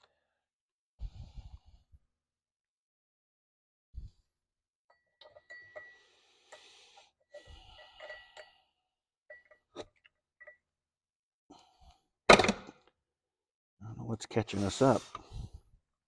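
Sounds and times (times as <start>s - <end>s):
person breathing: 1.0s - 2.0s, 5.7s - 8.8s, 14.5s - 15.8s
faint metallic ring: 4.9s - 6.6s, 7.7s - 8.7s.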